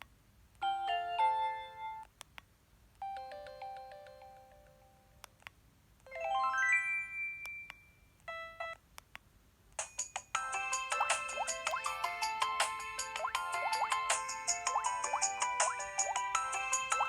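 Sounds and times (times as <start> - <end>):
mobile phone ringtones: 6.2 - 8.8.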